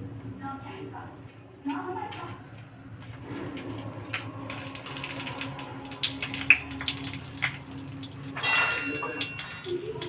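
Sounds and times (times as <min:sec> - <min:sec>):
water running and splashing: 0:04.5 - 0:10.0.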